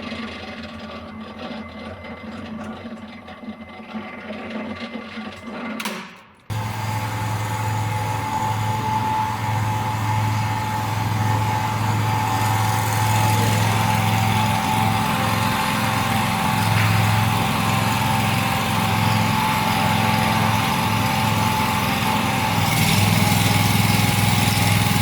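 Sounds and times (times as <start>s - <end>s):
hydraulic power unit humming: 0.0s - 25.0s
quieter machine running: 0.0s - 25.0s.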